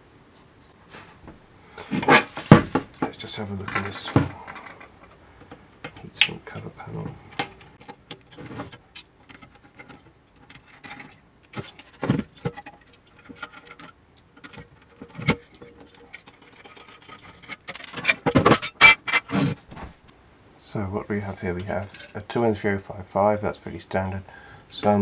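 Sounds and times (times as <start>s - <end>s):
metal clatter: 1.8s - 4.9s, 12.4s - 19.5s
clicks and knocks of parts: 1.8s - 6.4s, 7.3s - 19.6s.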